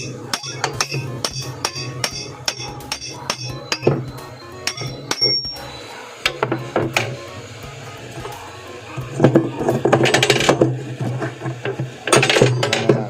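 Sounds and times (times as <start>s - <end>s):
hammer tapping on metal: 0.0s - 5.7s.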